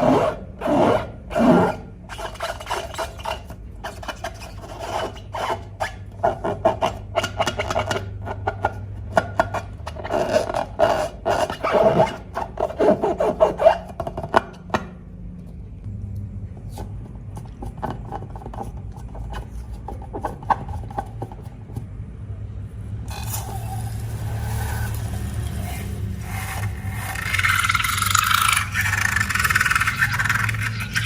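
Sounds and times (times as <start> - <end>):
slime scraping and rubbing: 23.1 - 31.0.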